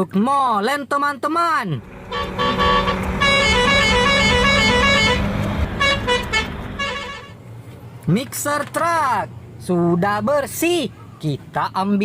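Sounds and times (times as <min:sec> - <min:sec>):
short horn notes: 0:01.8 - 0:07.3.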